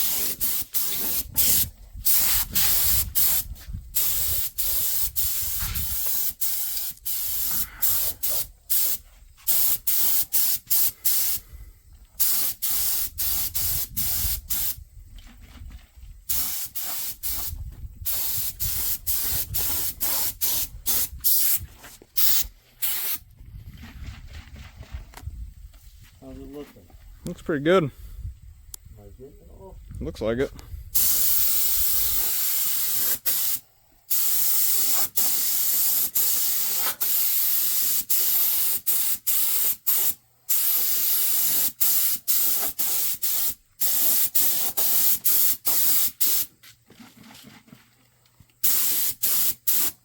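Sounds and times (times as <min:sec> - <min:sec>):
spray paint hissing bursts: 0:00.0 - 0:11.5, 0:12.2 - 0:14.8, 0:16.3 - 0:23.2, 0:31.0 - 0:46.5, 0:48.6 - 0:50.0.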